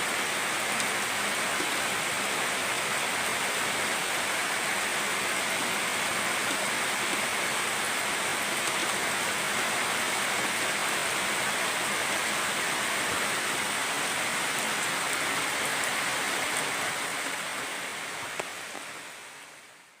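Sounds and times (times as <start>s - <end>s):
heavy rain downpour: 0.0s - 20.0s.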